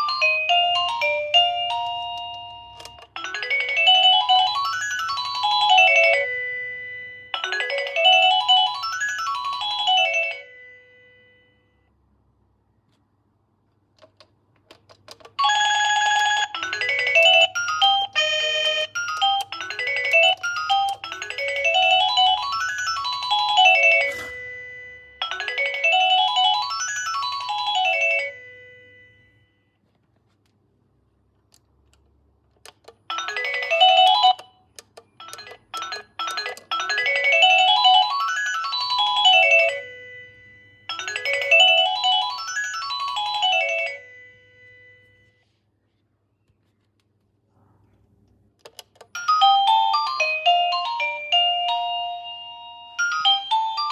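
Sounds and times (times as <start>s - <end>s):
electronic doorbell chime melody: 0.0s - 11.9s, 15.4s - 29.6s, 33.1s - 34.6s, 35.2s - 45.5s, 49.2s - 53.9s.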